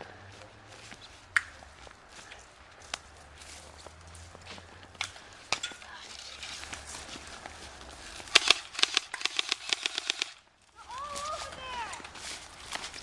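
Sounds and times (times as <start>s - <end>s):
airsoft gun firing: 8.3s - 10.4s.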